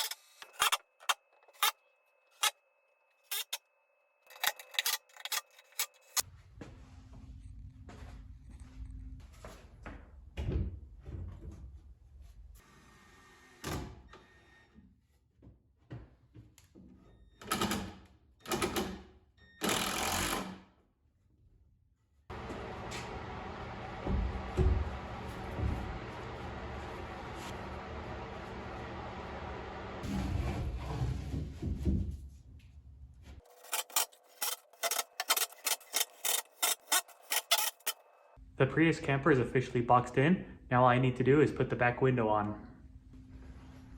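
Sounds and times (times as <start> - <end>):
power tool running: 22.3 - 30.1
workshop knocks and clatter: 23.9 - 27.5, 30.2 - 32.4
hand tool rasping strokes: 33.5 - 38.0.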